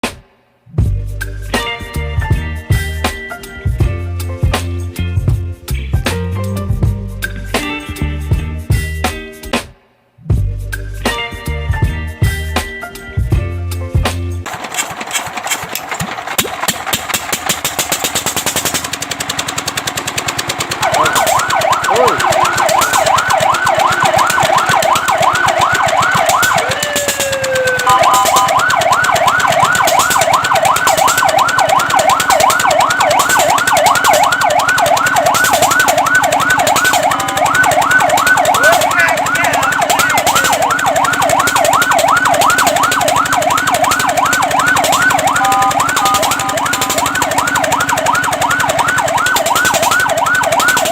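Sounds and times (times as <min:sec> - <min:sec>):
fire truck siren yelping: 0:14.4 - 0:50.9
rattling engine noise: 0:14.4 - 0:50.9.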